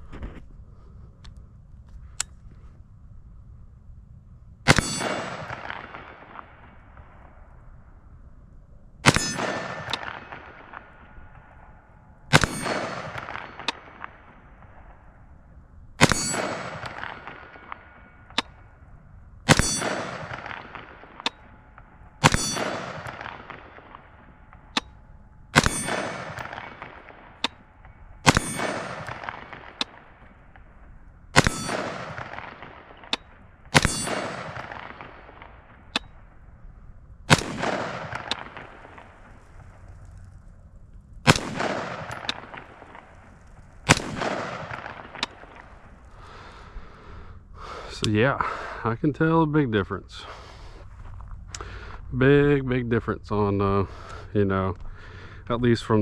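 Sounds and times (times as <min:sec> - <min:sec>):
rifle shots echoing: 0:04.6 - 0:08.0, 0:09.0 - 0:40.5, 0:41.2 - 0:47.0
sharp click: 0:35.9 - 0:36.1.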